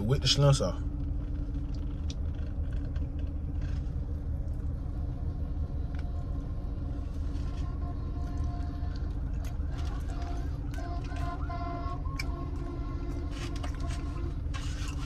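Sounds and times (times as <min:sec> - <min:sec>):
faint steady hum: 0:00.0 - 0:15.0
vehicle idling rumble: 0:00.0 - 0:15.0.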